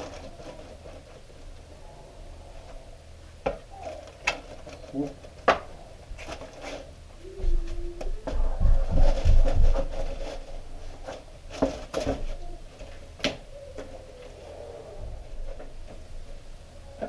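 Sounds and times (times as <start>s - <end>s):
low thuds and rustling: 7.5s - 12.4s.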